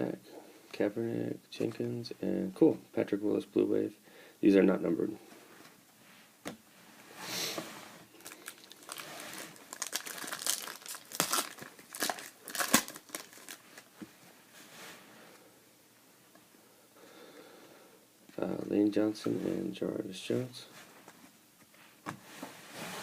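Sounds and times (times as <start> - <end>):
foil wrapper tearing and crinkling: 8.2 - 13.9.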